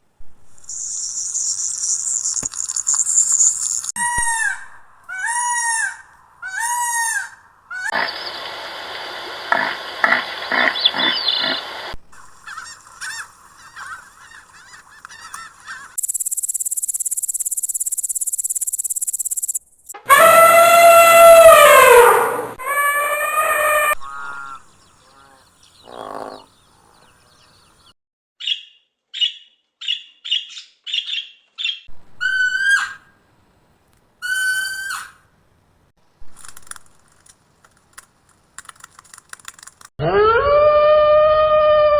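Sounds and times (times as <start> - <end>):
animal calls: 0.7 - 16.6, 19.4 - 27.6
rising-and-falling calls: 0.7 - 27.7.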